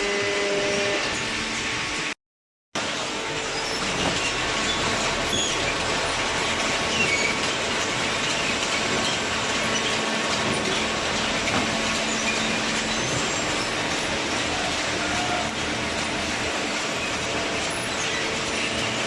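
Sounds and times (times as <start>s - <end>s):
machinery running: 2.8s - 19.0s.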